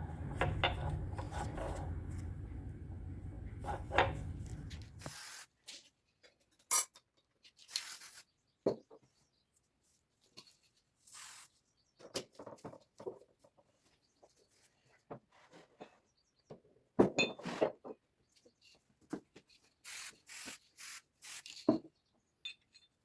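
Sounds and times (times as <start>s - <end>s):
low steady hum: 0.0s - 5.2s
metal tools clicking and knocking: 0.2s - 2.4s, 22.4s - 23.0s.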